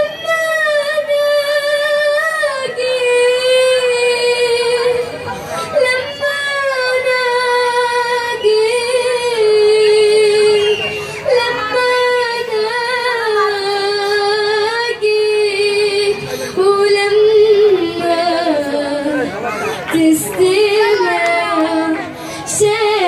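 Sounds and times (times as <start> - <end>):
girl singing unaccompanied: 5.8 - 10.6, 11.2 - 19.3, 19.9 - 23.0
girl breathing: 22.2 - 22.5.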